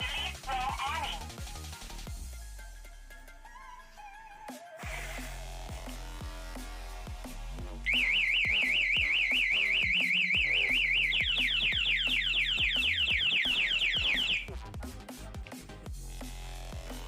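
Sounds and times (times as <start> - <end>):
motorcycle alarm siren warbling: 7.9 - 14.5.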